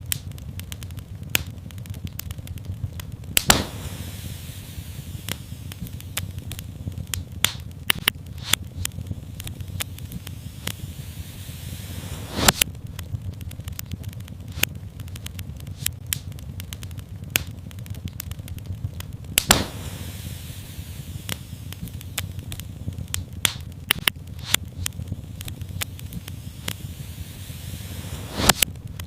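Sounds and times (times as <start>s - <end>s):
wood fire crackling and popping: 0.0s - 29.0s
faint high hiss: 3.4s - 12.6s, 19.4s - 23.5s, 24.4s - 28.6s.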